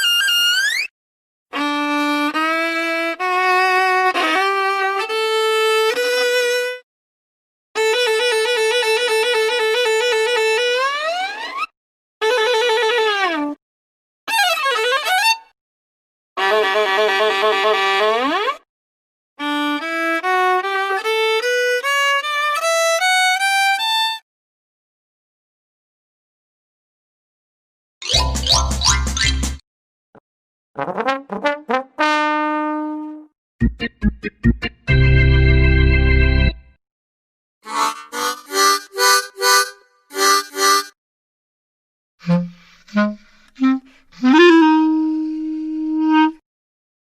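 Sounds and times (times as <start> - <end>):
tone sliding up in pitch: 28.0 - 29.6.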